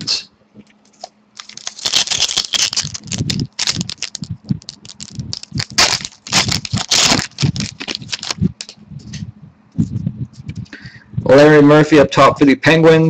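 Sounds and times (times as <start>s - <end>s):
card pack wrapper crinkling: 1.4s - 8.8s.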